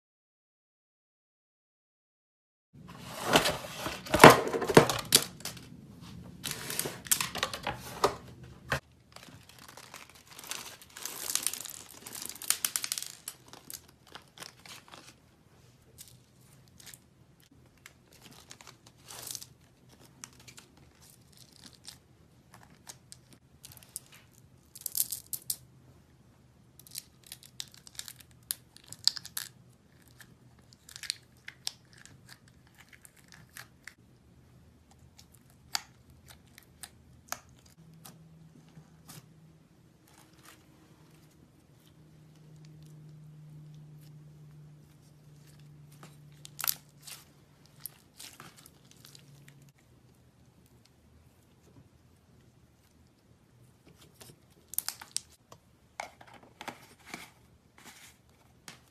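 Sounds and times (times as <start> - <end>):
packaging tearing and rustling: 6.4 - 8.2, 9.0 - 15.2.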